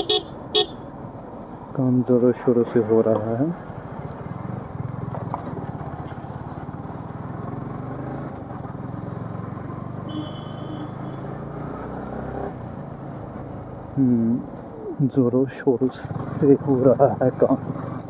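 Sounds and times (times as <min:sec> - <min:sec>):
motorcycle engine cruising: 0:02.3 - 0:18.0.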